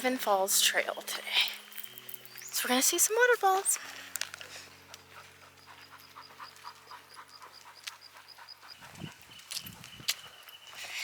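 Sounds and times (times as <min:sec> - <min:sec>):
dog panting: 0:04.7 - 0:10.8.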